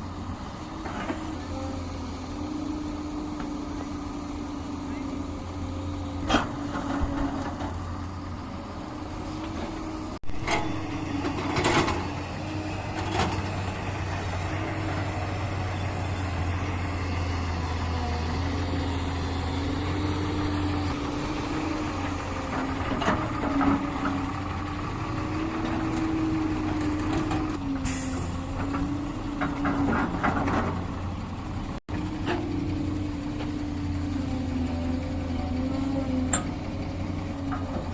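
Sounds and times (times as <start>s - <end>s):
heavy diesel machinery running: 0.0s - 37.9s
metal clanks and knocks: 6.2s - 7.8s, 9.4s - 12.2s, 25.5s - 31.0s.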